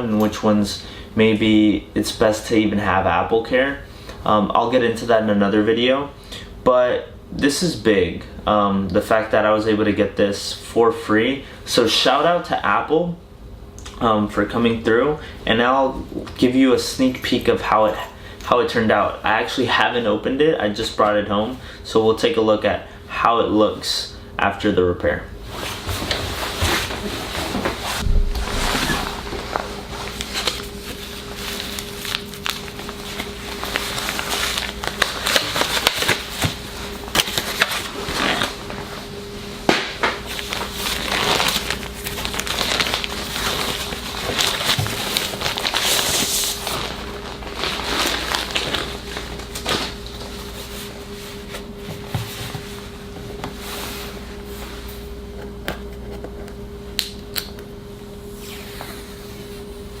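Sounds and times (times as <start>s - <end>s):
faint steady hum: 0.0s - 60.0s
packaging rustling and crinkling: 25.8s - 38.8s, 40.2s - 50.8s.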